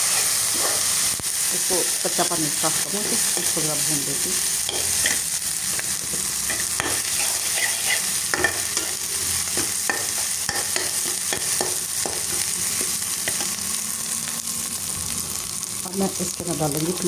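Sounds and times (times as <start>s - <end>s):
spoon scraping a pan: 0.0s - 1.0s, 2.9s - 13.6s
onions sizzling in oil: 0.0s - 17.0s.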